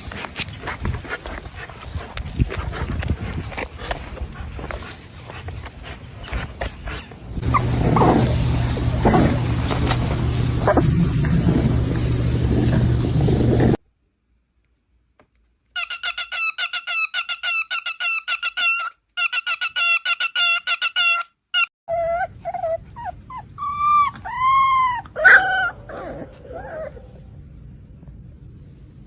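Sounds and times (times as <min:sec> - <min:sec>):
dog yelping: 0:15.8 - 0:27.1.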